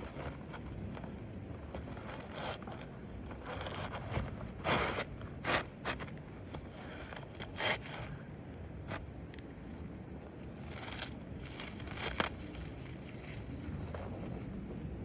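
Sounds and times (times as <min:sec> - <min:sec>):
roof shingles scraping and rustling: 0:00.0 - 0:08.2, 0:10.5 - 0:14.3.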